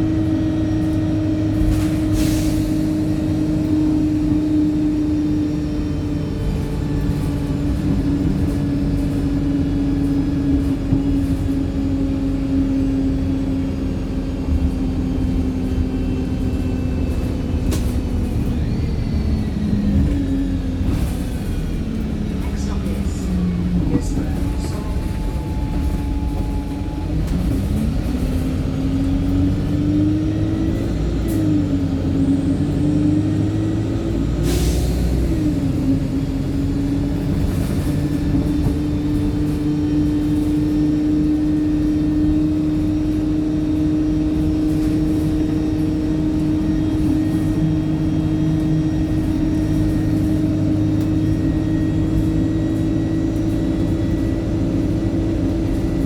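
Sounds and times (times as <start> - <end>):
bus diesel engine pulling away: 0.0 - 56.0.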